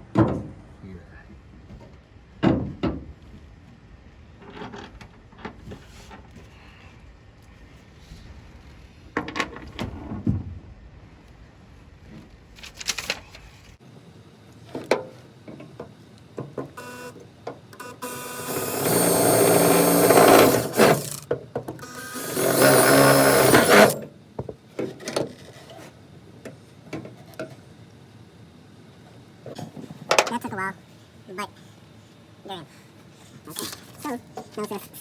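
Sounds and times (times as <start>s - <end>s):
power drill running: 16.8s - 17.2s, 17.8s - 24.0s.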